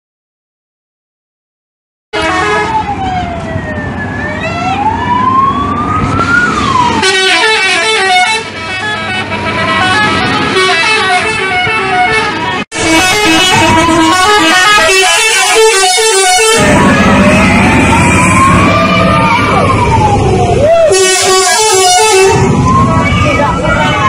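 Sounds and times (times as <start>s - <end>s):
musical air horn: 2.2s - 2.8s, 7.0s - 17.0s, 20.9s - 23.3s.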